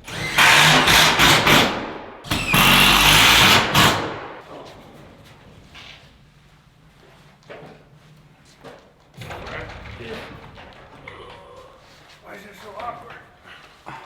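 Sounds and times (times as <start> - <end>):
power driver driving screws: 0.0 - 4.3.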